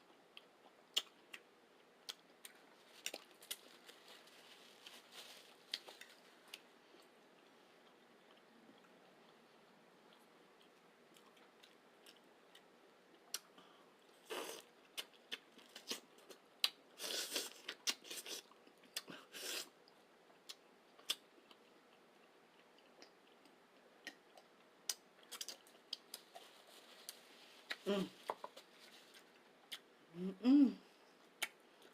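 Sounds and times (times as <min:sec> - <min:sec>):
chewing with wet mouth clicks: 0:00.1 - 0:03.6, 0:19.8 - 0:26.4, 0:31.4 - 0:31.9.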